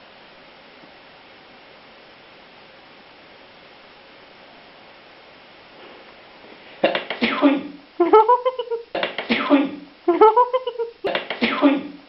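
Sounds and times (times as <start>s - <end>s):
person sneezing loudly: 6.8s - 7.8s, 9.0s - 9.8s, 11.1s - 12.0s.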